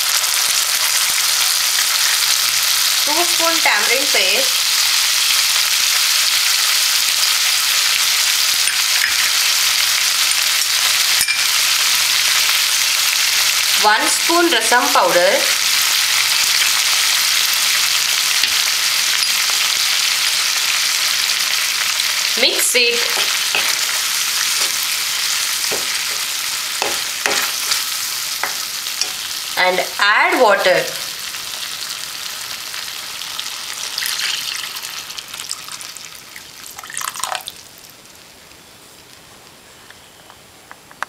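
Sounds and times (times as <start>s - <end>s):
food sizzling in a pan: 0.0s - 40.2s
water pouring into a pan: 33.9s - 37.8s.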